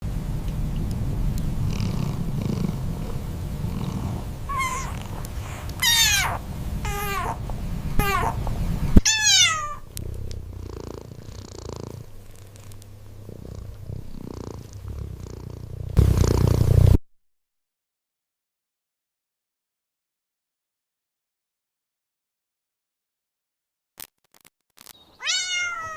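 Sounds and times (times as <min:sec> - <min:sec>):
cat purring: 0:00.6 - 0:17.0
cat meowing: 0:04.5 - 0:10.0, 0:25.2 - 0:25.9.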